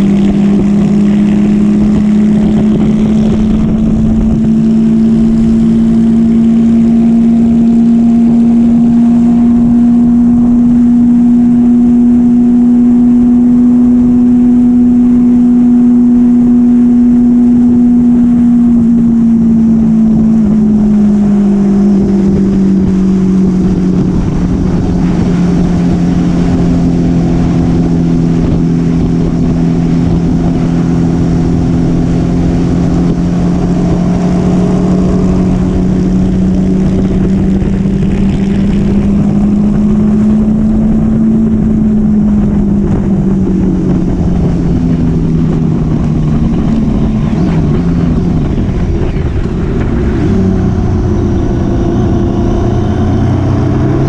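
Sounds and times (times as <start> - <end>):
motorcycle engine running: 0.0 - 54.0
wind rush: 0.0 - 54.0.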